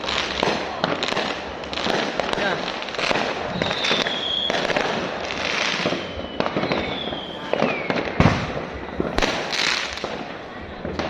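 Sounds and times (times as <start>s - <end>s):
fireworks crackling and banging: 0.0s - 11.0s
falling firework whistle: 3.1s - 10.4s.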